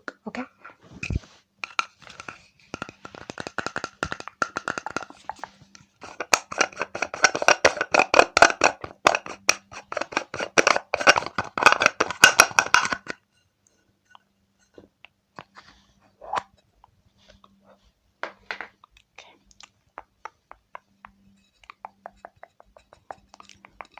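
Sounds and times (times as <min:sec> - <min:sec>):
fast tapping and patting: 0:01.6 - 0:13.1, 0:19.9 - 0:23.9.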